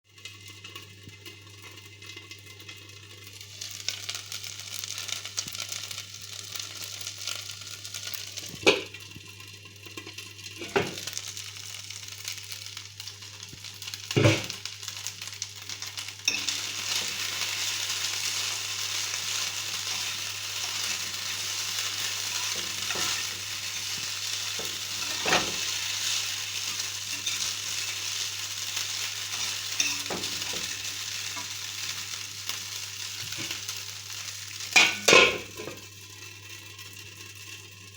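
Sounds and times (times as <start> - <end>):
food sizzling in a frying pan: 0.0 - 37.9
knocks against a pan: 14.2 - 14.6.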